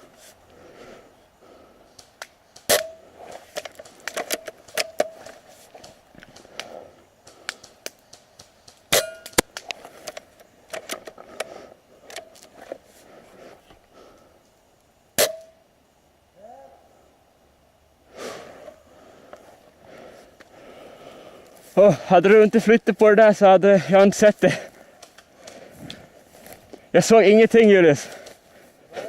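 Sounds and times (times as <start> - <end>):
faint clicks and crunches: 1.9 - 14.6, 24.2 - 26.9, 28.0 - 29.0
airsoft gun shots: 2.7 - 3.0, 15.2 - 15.6.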